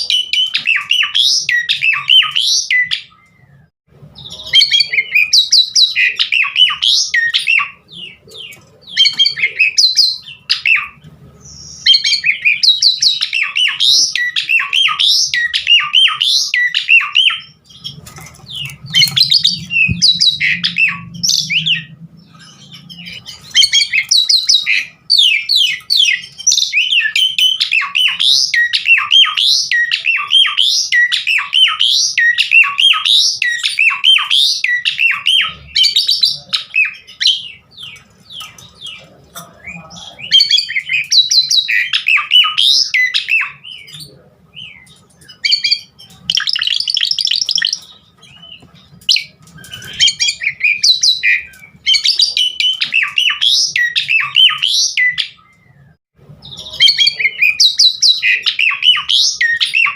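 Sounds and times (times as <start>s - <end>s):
starling chattering whistles: 9.0s - 37.6s.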